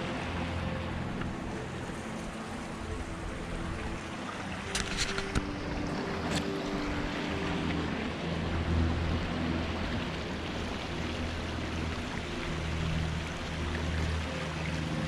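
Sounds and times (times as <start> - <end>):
stream water rushing: 0.0 - 15.0
sharp click: 4.7 - 5.5.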